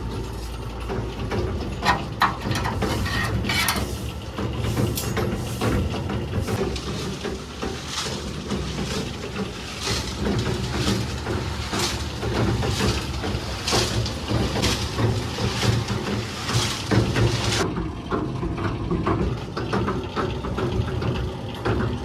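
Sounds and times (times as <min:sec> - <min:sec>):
machinery humming: 0:00.0 - 0:22.0
clattering knocks: 0:01.2 - 0:17.6.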